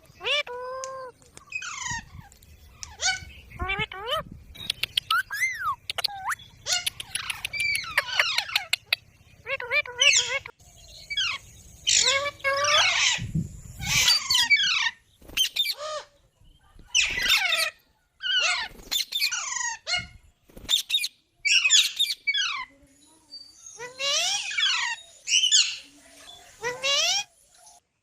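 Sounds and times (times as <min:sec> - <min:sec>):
parrot squawking: 0:00.2 - 0:02.1, 0:04.9 - 0:13.2.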